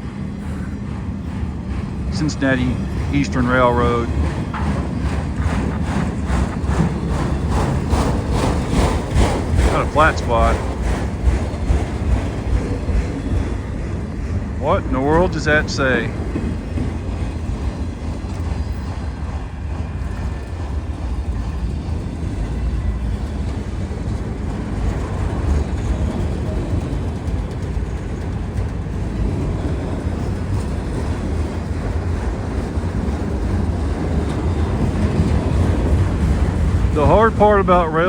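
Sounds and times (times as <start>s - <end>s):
steel wheels rumbling on rails: 0.0s - 38.0s.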